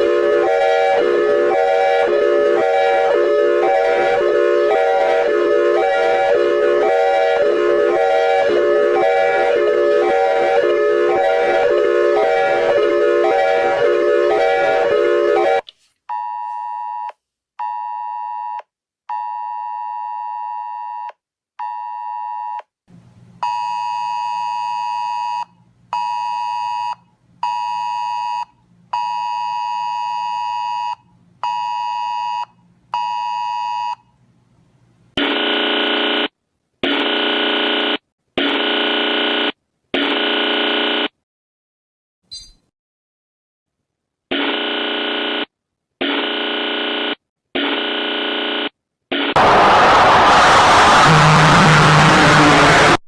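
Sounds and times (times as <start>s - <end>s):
two-tone alert beeps: 42.3s - 42.6s
harsh buzzer blasts: 44.3s - 48.8s.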